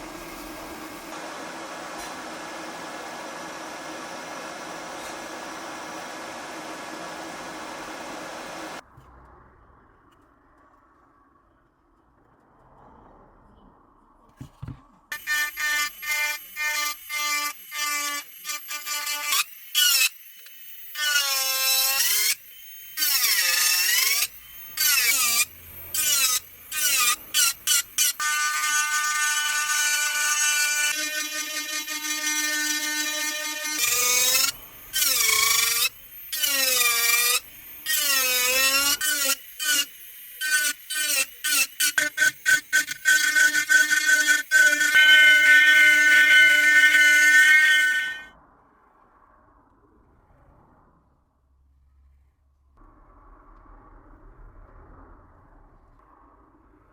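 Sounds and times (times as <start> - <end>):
handheld rotary tool running: 15.1 - 48.2.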